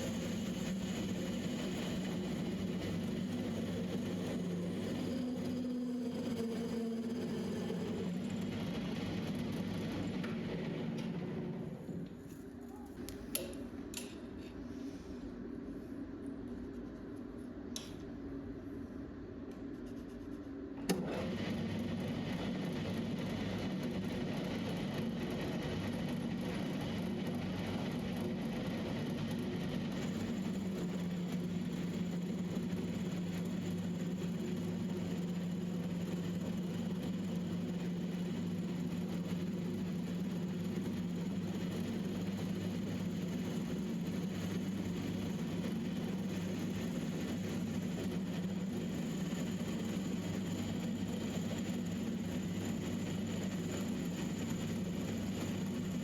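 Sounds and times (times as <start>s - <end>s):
metal lathe humming: 0.0s - 11.8s.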